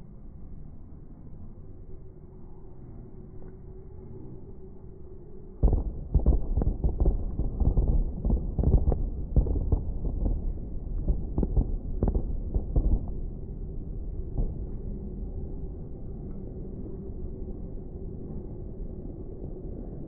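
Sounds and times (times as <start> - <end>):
fireworks bursting as deep thuds: 5.6 - 13.2.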